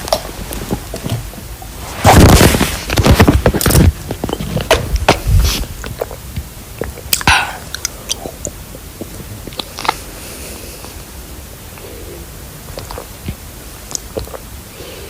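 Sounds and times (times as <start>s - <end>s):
person swallowing: 4.1s - 10.0s
wet mouth clicks: 4.6s - 10.1s, 12.7s - 14.6s.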